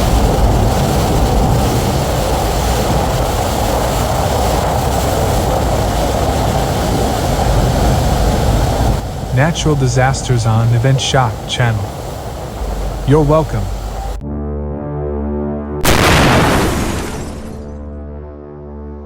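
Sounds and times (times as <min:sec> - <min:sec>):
flood torrent rushing: 0:00.0 - 0:14.2.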